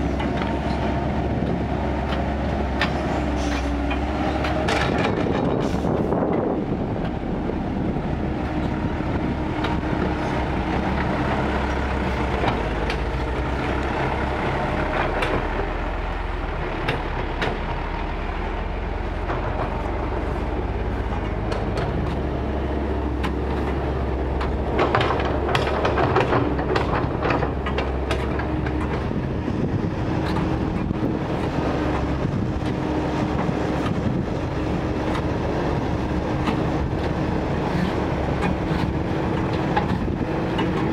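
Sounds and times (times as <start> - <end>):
hydraulic excavator running: 0.0 - 40.9
clanking and scraping: 2.0 - 7.2, 18.6 - 22.4, 23.1 - 40.9.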